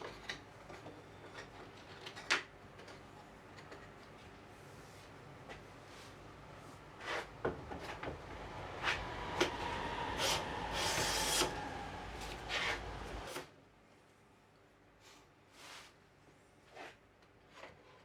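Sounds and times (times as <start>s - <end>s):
hand plane scraping wood: 8.4s - 13.4s.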